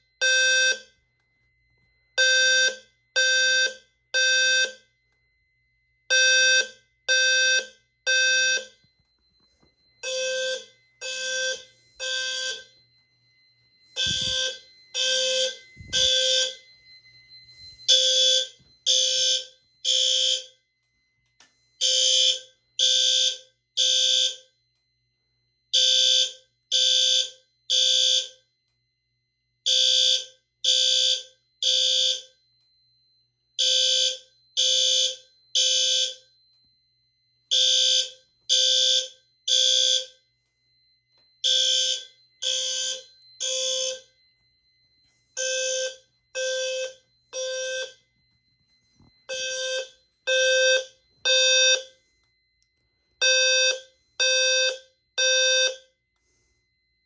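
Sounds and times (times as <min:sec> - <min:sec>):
fire alarm horn blasts: 0:00.0 - 0:57.0.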